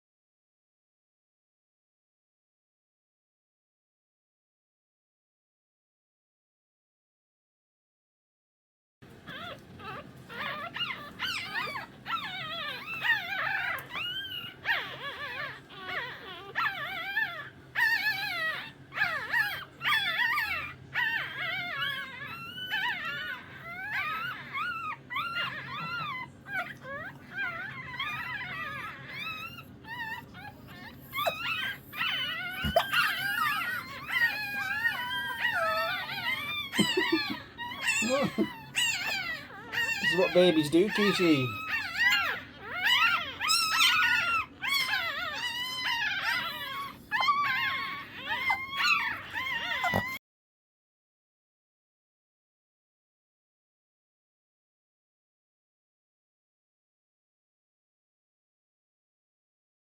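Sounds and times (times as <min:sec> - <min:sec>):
puppies whimpering and crying: 0:09.1 - 0:50.2.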